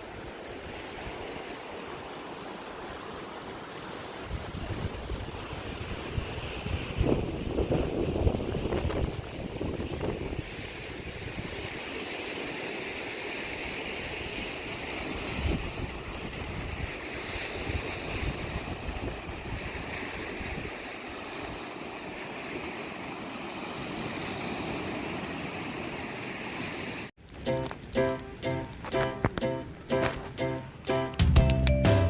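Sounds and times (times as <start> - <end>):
waves hitting the shore: 0.0 - 31.8
wind buffeting microphone: 4.3 - 11.7, 15.2 - 20.8.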